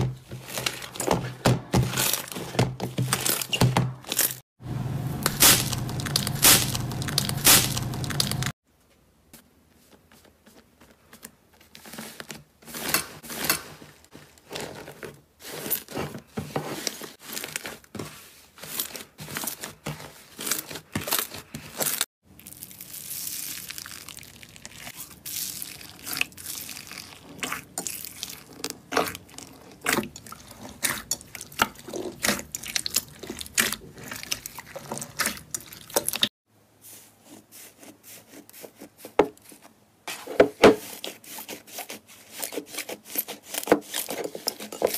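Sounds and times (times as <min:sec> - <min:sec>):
slime crackling and popping: 0:22.4 - 0:36.3.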